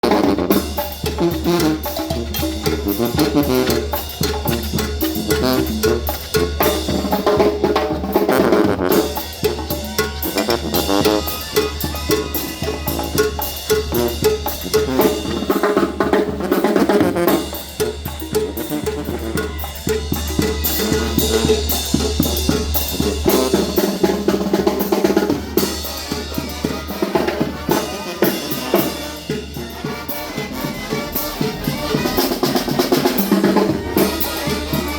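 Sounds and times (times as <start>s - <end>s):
bass drum: 0.0s - 27.7s
brass band music: 0.0s - 34.9s
snare drum rimshots and rolls: 0.0s - 34.9s.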